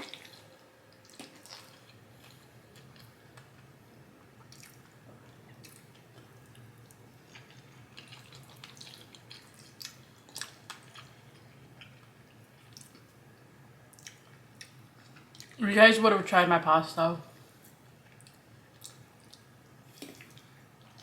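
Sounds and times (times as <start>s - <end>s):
low steady hum: 0.0s - 21.0s
chewing and wet mouth clicks: 4.4s - 4.9s, 5.5s - 15.6s, 18.0s - 21.0s.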